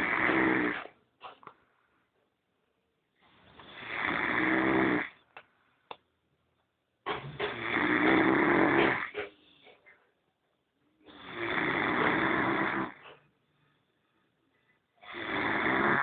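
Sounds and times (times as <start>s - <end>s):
person snoring: 0.0s - 0.9s, 3.5s - 5.2s, 7.4s - 9.1s, 11.1s - 13.0s, 15.0s - 16.0s.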